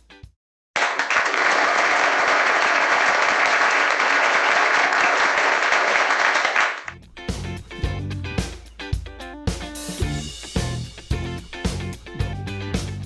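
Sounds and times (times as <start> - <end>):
crowd applauding: 0.8 - 7.0.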